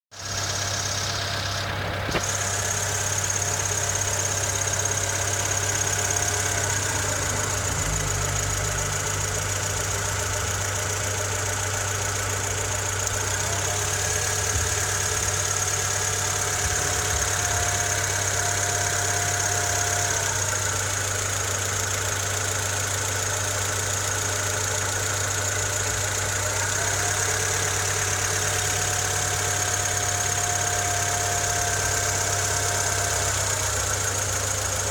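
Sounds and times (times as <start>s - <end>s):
car engine idling: 0.1s - 34.9s
engine knock: 0.1s - 34.9s.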